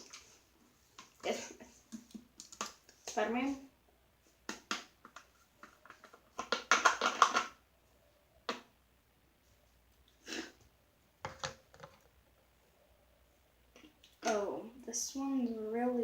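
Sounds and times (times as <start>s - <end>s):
plastic containers clicking and rattling: 1.0s - 3.2s, 4.5s - 7.6s, 11.2s - 12.1s.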